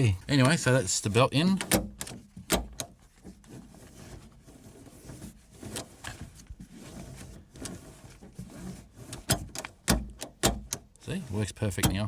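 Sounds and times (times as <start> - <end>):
seatbelt clicks and rustles: 1.6 - 11.0.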